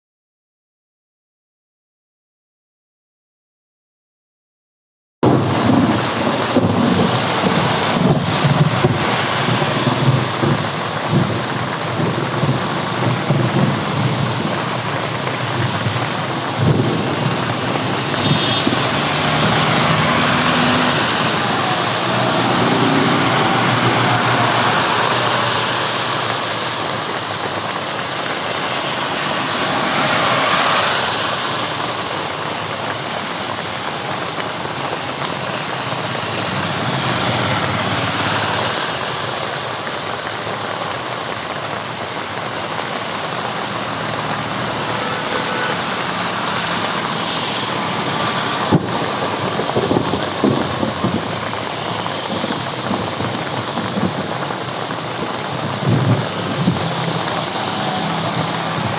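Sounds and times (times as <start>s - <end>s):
road traffic hiss in rain: 5.2s - 58.9s.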